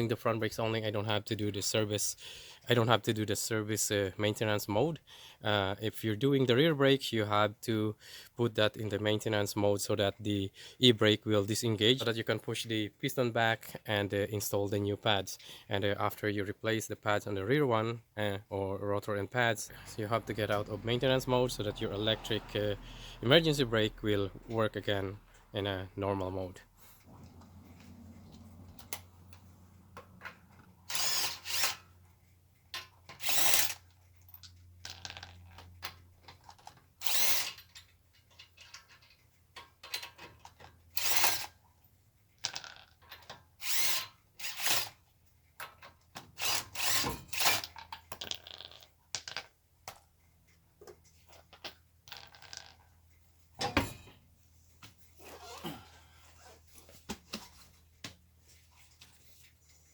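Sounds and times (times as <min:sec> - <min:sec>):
cordless impact wrench bursts: 0:30.9 - 0:31.8, 0:46.4 - 0:47.6.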